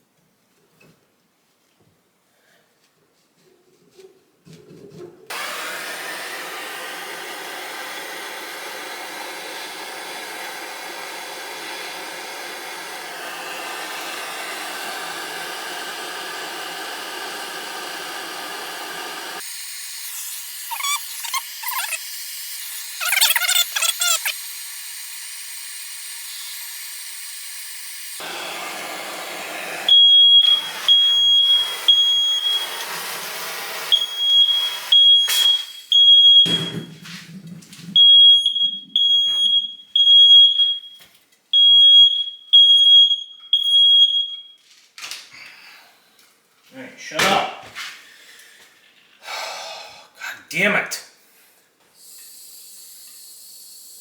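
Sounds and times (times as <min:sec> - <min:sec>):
soldering torch hissing: 0:05.3 - 0:35.9, 0:52.0 - 0:54.0
smoke alarm beeping: 0:29.8 - 0:37.1, 0:38.0 - 0:44.6.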